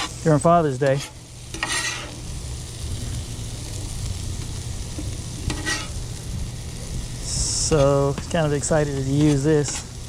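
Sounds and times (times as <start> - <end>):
food sizzling on griddle: 0.0 - 10.0
low steady rumble: 0.2 - 10.0
spatula scrape: 0.9 - 2.2, 5.3 - 6.0, 7.7 - 10.0.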